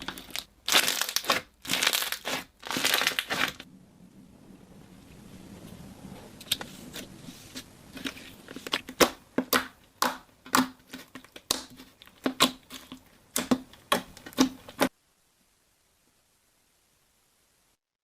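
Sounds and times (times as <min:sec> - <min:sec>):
crunchy slime crackling snaps: 0:00.0 - 0:03.6, 0:08.7 - 0:14.9.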